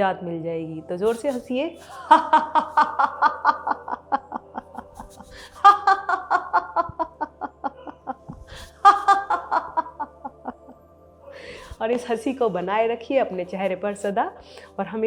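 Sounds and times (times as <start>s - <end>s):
person laughing ha ha ha: 1.9s - 10.8s.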